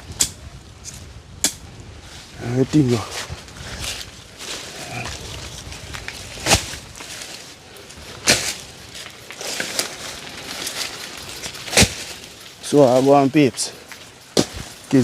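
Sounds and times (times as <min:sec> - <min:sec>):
faint outdoor rustling: 0:00.0 - 0:15.0.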